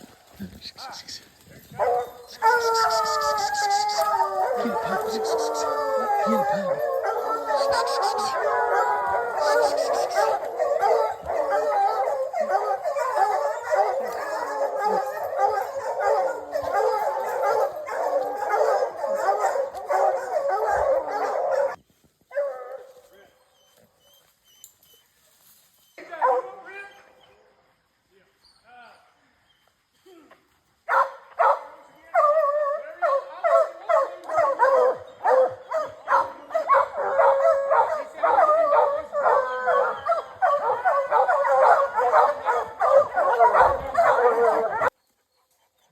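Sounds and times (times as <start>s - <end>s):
hounds baying: 0.4s - 22.9s, 30.9s - 45.0s
dog howling: 1.8s - 21.8s, 32.2s - 44.9s.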